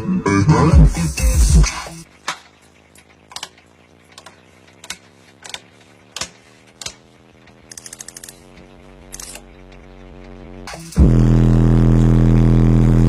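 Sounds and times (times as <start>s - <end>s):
faint low hum: 2.0s - 13.0s
sharp clicks and taps: 2.2s - 10.4s.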